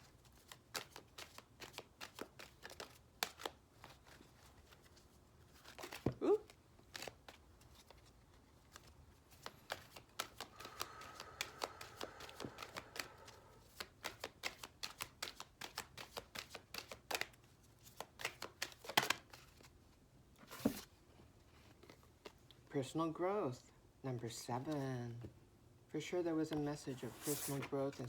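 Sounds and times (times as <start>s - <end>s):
cards being shuffled: 0.0s - 19.8s, 26.5s - 28.0s.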